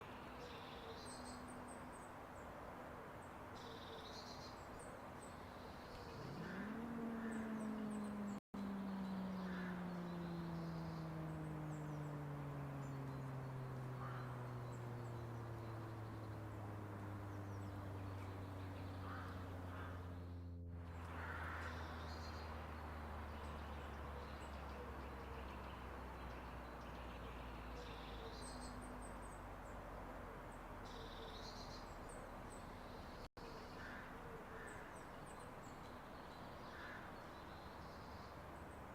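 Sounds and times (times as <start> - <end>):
birds chirping faintly: 0.0 - 38.9
warning siren wailing: 6.2 - 18.5.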